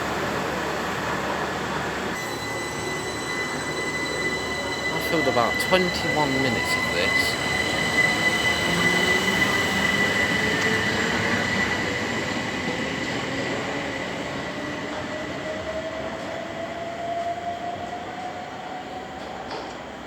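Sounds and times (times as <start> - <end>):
electric train whine: 0.0 - 20.0
high-pitched squeal: 2.2 - 12.3.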